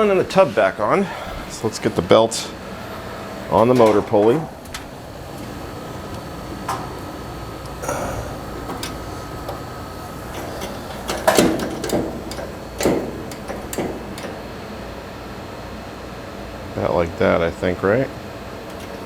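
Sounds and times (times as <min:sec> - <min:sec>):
clicks and light knocks: 0:03.6 - 0:14.6.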